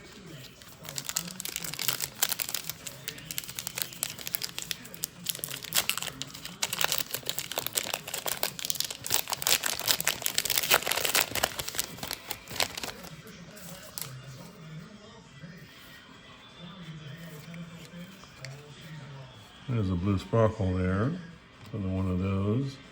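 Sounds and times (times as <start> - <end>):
trading cards crinkling and rustling: 0.0 - 14.5.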